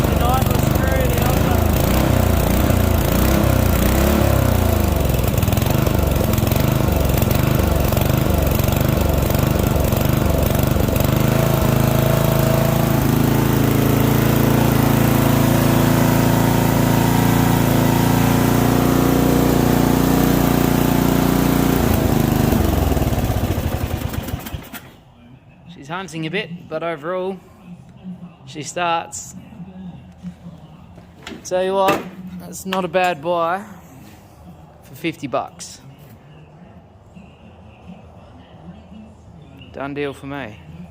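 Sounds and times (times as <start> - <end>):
ride-on mower engine running: 0.0 - 25.0.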